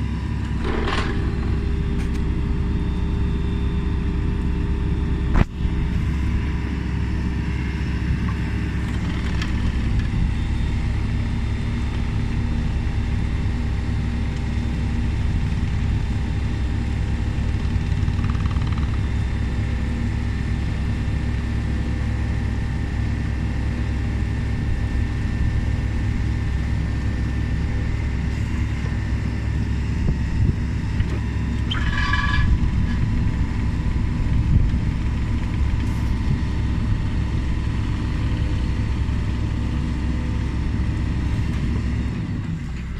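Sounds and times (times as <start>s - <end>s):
high-pitched whine: 0.0s - 8.0s
excavator engine running: 0.0s - 42.9s.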